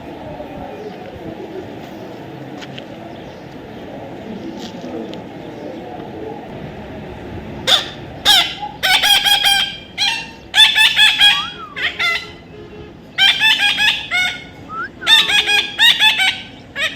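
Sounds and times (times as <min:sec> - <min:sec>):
parrot squawking: 0:07.7 - 0:12.4, 0:13.2 - 0:16.9.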